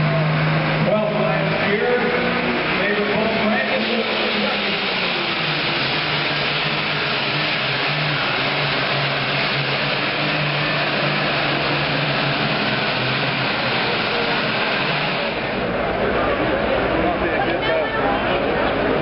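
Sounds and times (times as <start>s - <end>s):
diesel tractor engine running hard: 0.0s - 19.0s.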